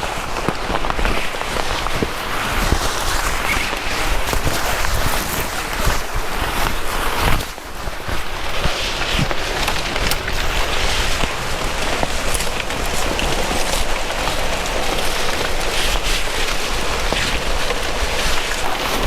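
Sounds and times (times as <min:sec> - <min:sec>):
heavy rain falling: 0:07.7 - 0:19.0.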